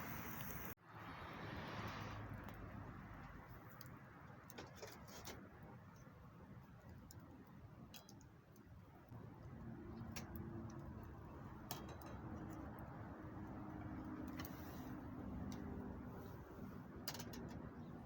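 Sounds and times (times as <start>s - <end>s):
campfire crackling and popping: 0.0s - 0.8s, 5.4s - 16.1s.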